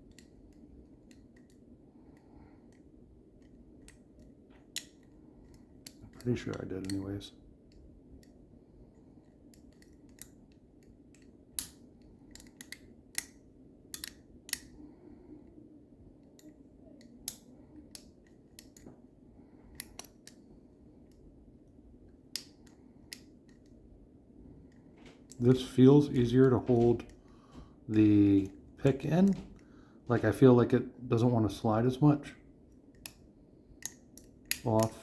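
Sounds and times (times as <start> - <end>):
faint steady hum: 0.0 - 35.0
lock pick clicking in lock: 11.2 - 14.7.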